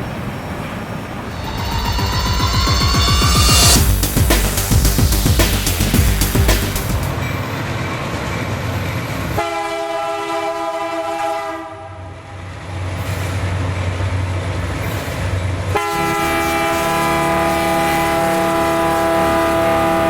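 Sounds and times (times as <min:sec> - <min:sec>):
train rumble: 0:00.0 - 0:09.9, 0:12.1 - 0:20.0
train horn chord blasts: 0:09.4 - 0:11.9, 0:15.8 - 0:20.0.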